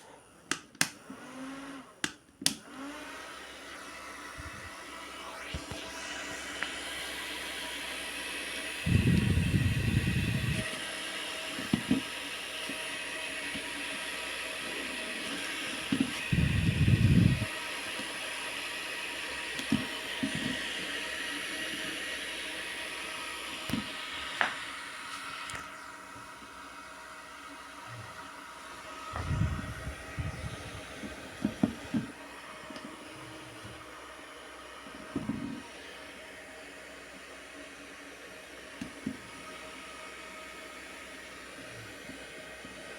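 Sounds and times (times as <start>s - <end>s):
electric fan whirring: 0.0s - 42.9s
short low rumbles: 29.2s - 30.9s.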